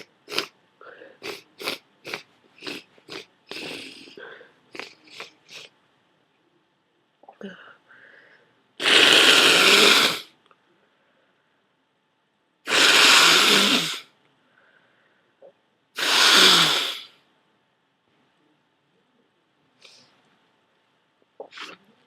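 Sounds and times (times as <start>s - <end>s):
person blowing nose: 0.0s - 0.5s, 1.2s - 4.1s, 8.8s - 10.3s, 12.7s - 14.1s, 16.0s - 17.1s.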